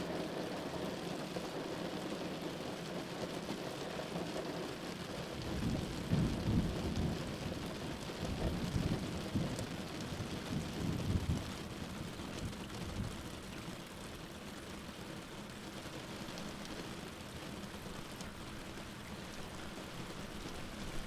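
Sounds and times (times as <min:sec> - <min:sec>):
steady rain: 0:00.0 - 0:21.0
thunder rumbling: 0:05.4 - 0:13.4.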